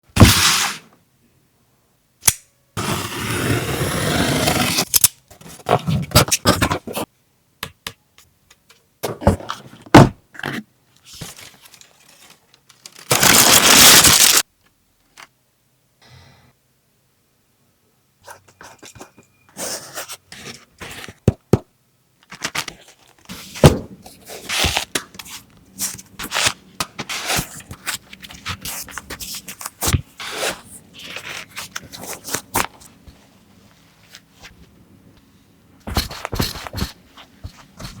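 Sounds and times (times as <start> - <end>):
paper packing rustling: 11.0 - 14.4.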